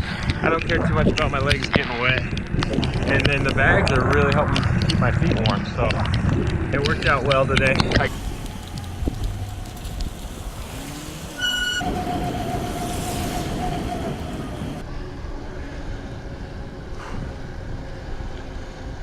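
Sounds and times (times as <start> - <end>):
bicycle tyre noise: 0.0 - 14.9
wind noise: 0.0 - 19.0
steady tone: 11.2 - 17.0
short high beep: 11.4 - 13.9.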